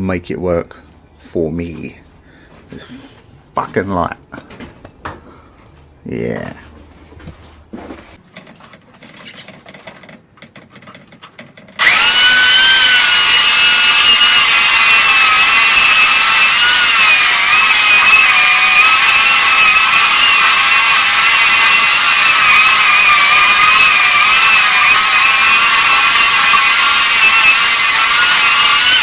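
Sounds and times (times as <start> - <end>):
chainsaw cutting log: 11.7 - 29.0.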